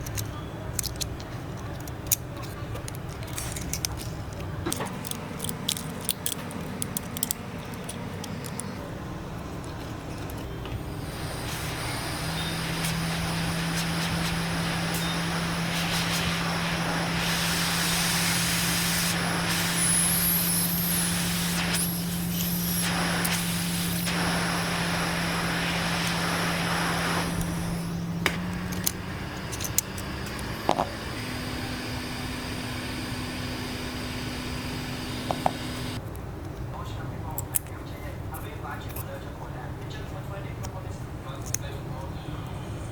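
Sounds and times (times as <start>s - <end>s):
rush of blowing air: 10.9s - 36.0s.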